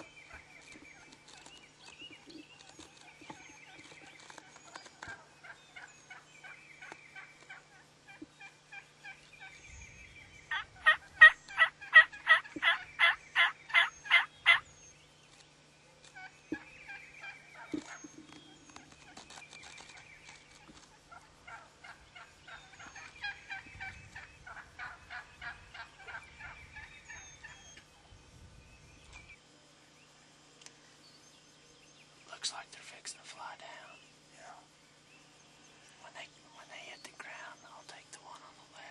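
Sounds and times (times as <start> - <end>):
wild turkeys calling: 0.0 - 9.7, 10.3 - 14.9, 16.0 - 28.1.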